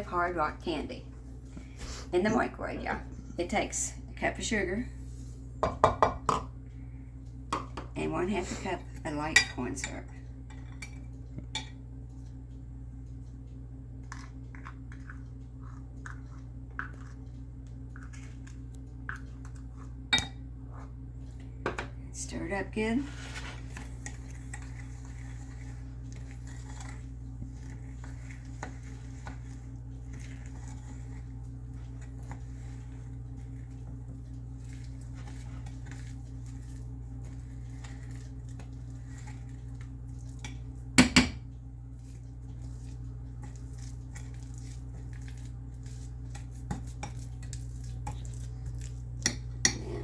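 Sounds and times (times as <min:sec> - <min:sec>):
steady low hum: 0:00.0 - 0:50.0
spoon scraping sugar in a bowl: 0:22.8 - 0:40.6, 0:42.0 - 0:50.0.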